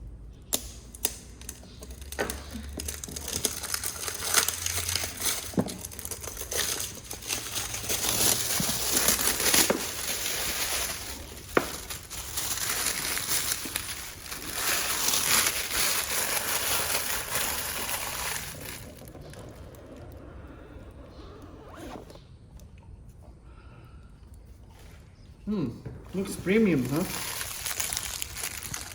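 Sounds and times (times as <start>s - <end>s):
packaging crinkling and rustling: 1.0s - 20.4s, 26.1s - 28.9s.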